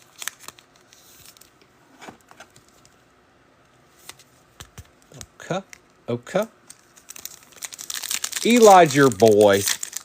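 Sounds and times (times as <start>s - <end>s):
trading cards rustling: 0.0s - 1.5s, 6.6s - 10.0s.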